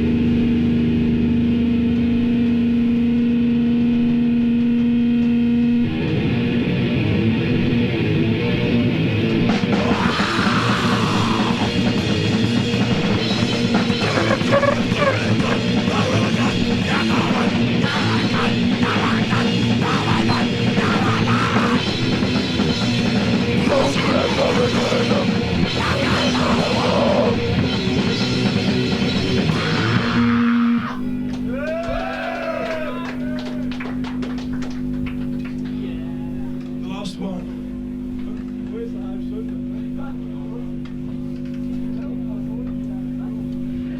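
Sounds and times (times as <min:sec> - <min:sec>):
bass guitar: 0:00.0 - 0:43.9
distorted electric guitars: 0:00.0 - 0:43.9
fast drums: 0:08.7 - 0:32.0.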